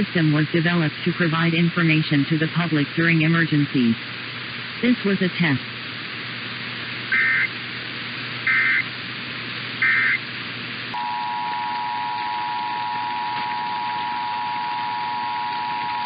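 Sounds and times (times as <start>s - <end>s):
digital data tone bursts: 7.1s - 7.5s, 8.5s - 8.9s, 9.8s - 10.2s
two-tone attention signal: 8.5s - 8.8s, 9.8s - 10.2s, 11.0s - 16.0s.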